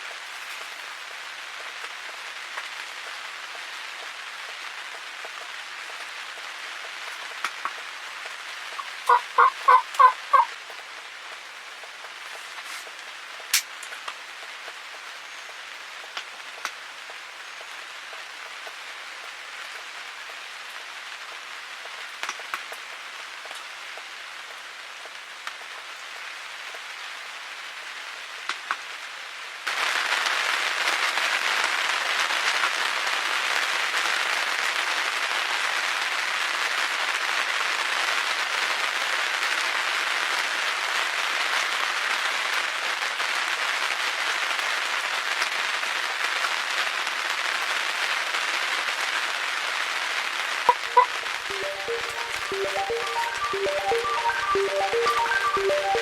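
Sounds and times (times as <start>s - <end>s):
steady rain falling: 0.0s - 56.0s
sharp raindrops ticking: 50.7s - 56.0s.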